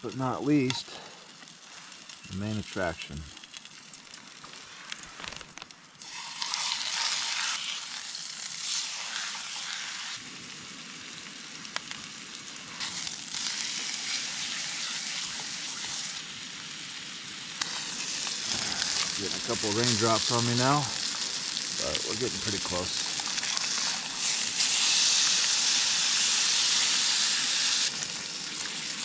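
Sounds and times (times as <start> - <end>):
steak sizzling in a frying pan: 6.0 - 29.0.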